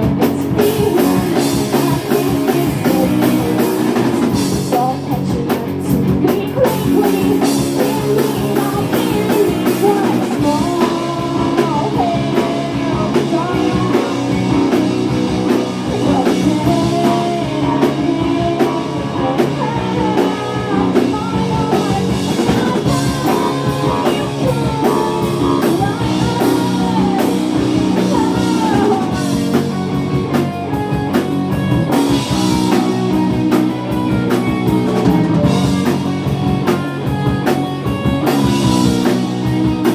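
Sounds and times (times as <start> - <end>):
person singing: 0.0 - 31.1
drum kit: 0.0 - 39.9
electric guitar: 0.0 - 39.9.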